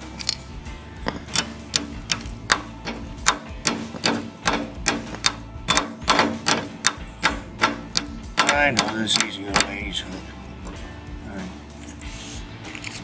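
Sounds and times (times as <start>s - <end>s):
metal tools tapping on pin: 1.1s - 10.0s.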